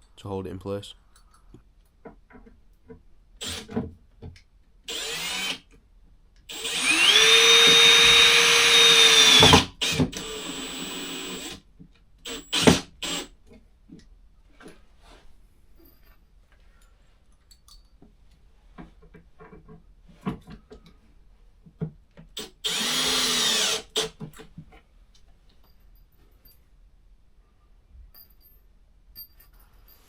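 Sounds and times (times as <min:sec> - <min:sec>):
power drill driving screws: 0:03.4 - 0:03.8, 0:04.9 - 0:05.6, 0:06.5 - 0:11.6, 0:12.2 - 0:13.3, 0:22.4 - 0:24.2.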